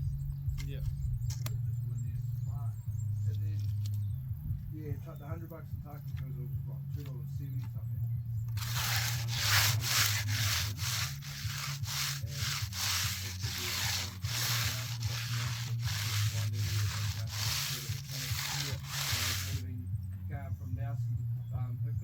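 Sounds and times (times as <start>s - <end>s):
tool scraping wet concrete: 8.6s - 19.6s.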